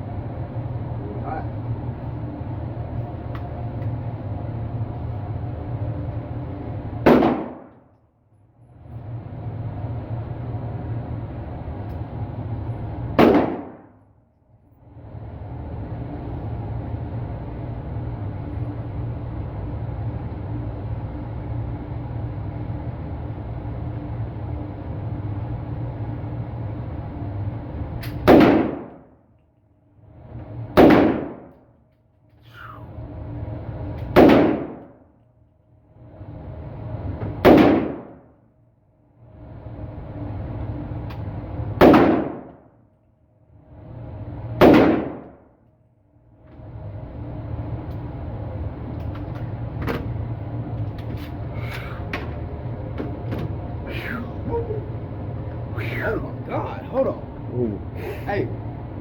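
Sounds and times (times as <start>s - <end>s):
rifle gunshots: 7.1s - 7.7s, 13.2s - 13.8s, 28.3s - 29.0s, 30.8s - 31.5s, 34.2s - 34.8s, 37.4s - 38.2s, 41.8s - 42.5s, 44.6s - 45.3s
steady background noise: 29.8s - 59.0s.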